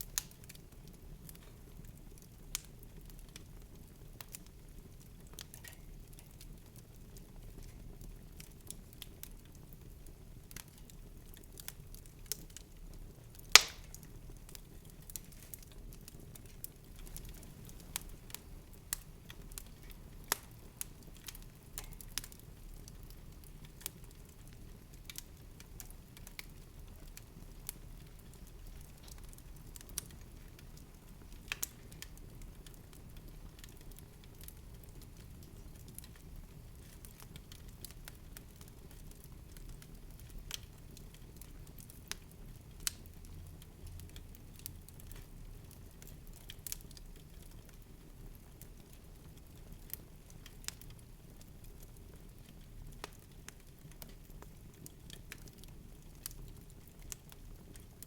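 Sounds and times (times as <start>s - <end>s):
soft crackles and pops: 0.0s - 58.0s
loud pop: 13.6s - 13.9s.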